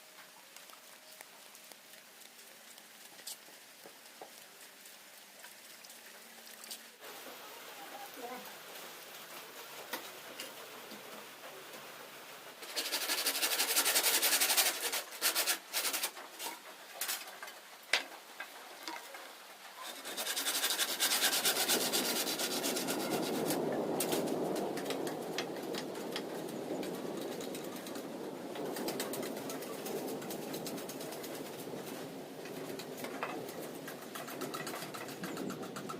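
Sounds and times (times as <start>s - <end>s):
tool rasping bamboo: 12.6s - 17.2s, 19.8s - 23.6s.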